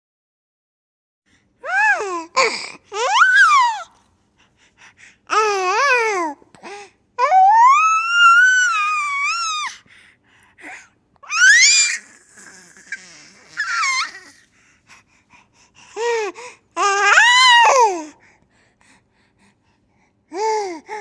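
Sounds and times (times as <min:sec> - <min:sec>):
high-pitched wavering vocal cries: 0:03.0 - 0:03.9, 0:11.3 - 0:14.4.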